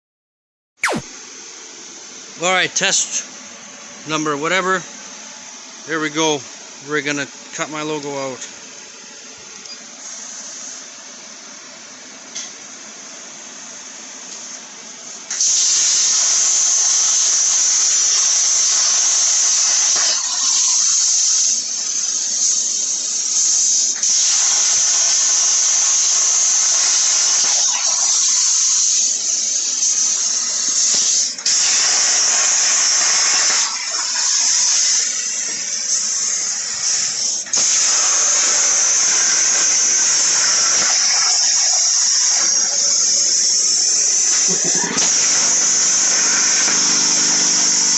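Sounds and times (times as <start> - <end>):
plasma cutter torch hissing: 0.8 - 1.0, 15.3 - 47.9.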